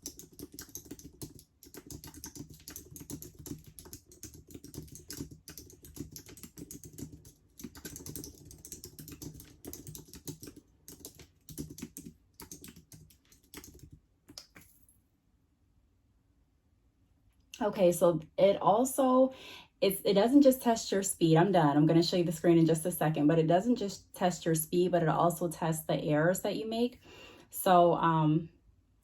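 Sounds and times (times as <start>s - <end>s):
fast keyboard typing: 0.0s - 14.7s.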